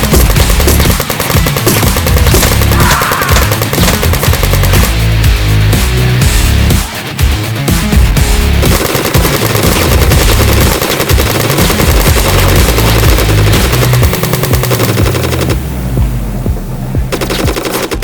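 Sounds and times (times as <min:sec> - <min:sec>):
machine-gun fire: 0:00.0 - 0:05.2, 0:08.6 - 0:15.7, 0:17.1 - 0:18.0.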